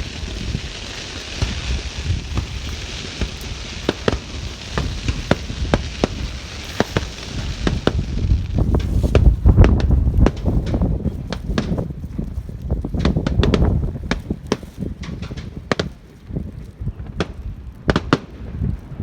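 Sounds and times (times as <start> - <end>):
hiss: 0.0 - 8.0
fireworks crackling: 0.0 - 19.0.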